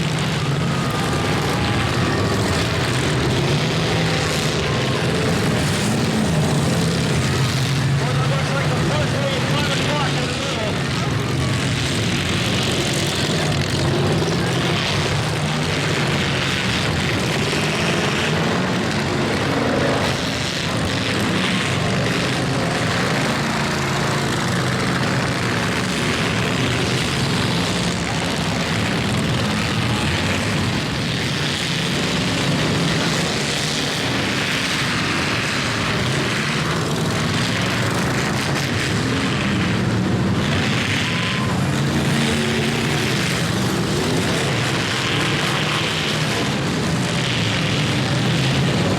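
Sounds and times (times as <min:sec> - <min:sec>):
many car engines revving: 0:00.0 - 0:48.9.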